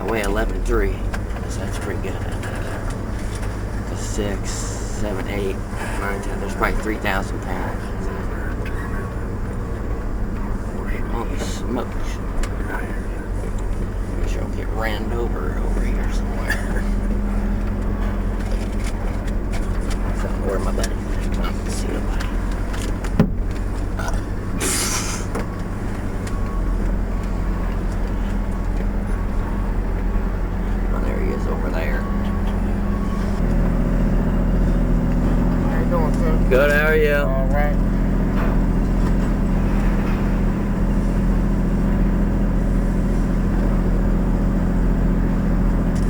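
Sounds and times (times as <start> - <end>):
truck engine running: 0.0 - 46.0
short hiss: 24.6 - 25.3.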